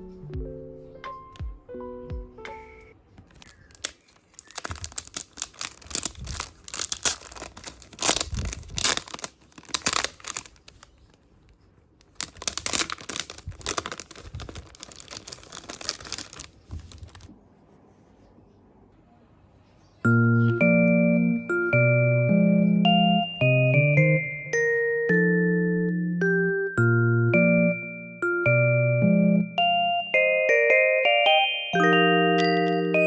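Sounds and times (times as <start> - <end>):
wrapper tearing and crinkling: 3.3 - 11.2, 12.0 - 17.3.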